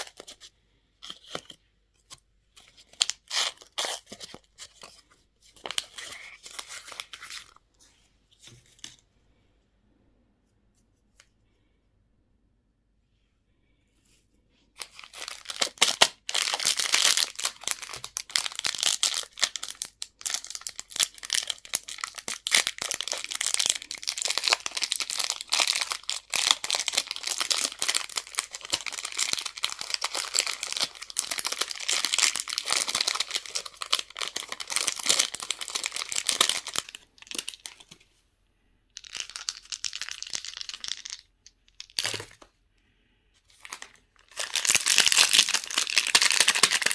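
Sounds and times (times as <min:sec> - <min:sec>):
candy wrapper crinkling and tearing: 0:00.0 - 0:01.6, 0:02.5 - 0:05.0, 0:05.6 - 0:07.6, 0:14.8 - 0:38.0, 0:39.0 - 0:42.4, 0:43.5 - 0:46.9.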